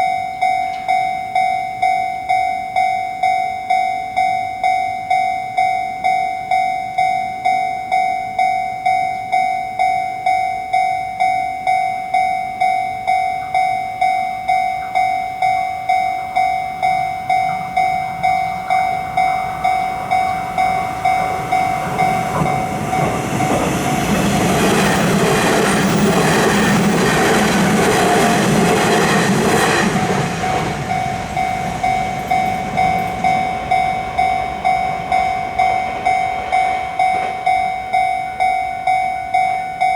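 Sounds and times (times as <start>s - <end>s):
level crossing bell ringing: 0.0s - 39.9s
train passing with rumble: 16.8s - 39.9s.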